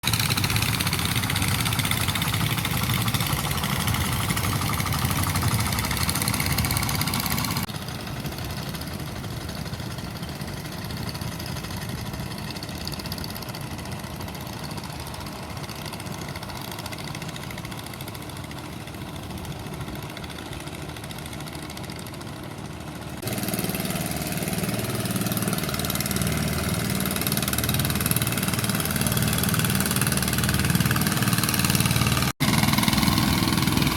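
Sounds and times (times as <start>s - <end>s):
engine running: 0.0s - 33.9s.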